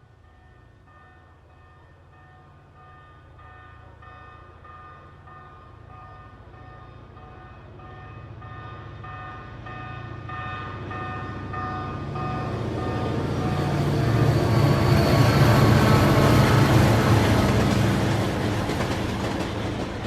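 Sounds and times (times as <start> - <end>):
train engine rumble: 0.0 - 20.0.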